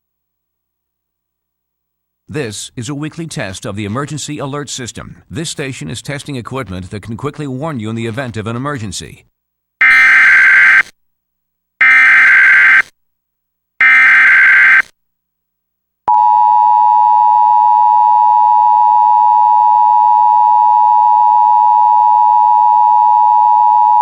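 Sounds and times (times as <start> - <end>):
digital data tone bursts: 9.8 - 10.9, 11.8 - 12.9, 13.8 - 14.9
loud steady alert tone: 9.8 - 10.9, 11.8 - 12.9, 13.8 - 14.9.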